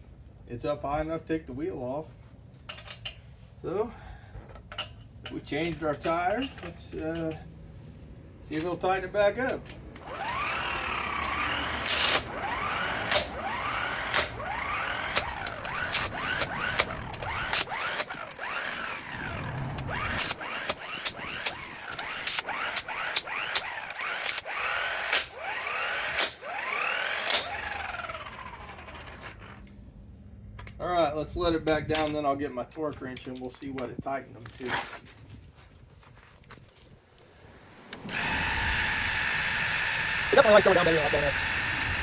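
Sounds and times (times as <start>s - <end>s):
impact wrench clicks: 9.5s - 27.9s
impact wrench motor whine: 9.9s - 29.6s, 37.9s - 42.0s.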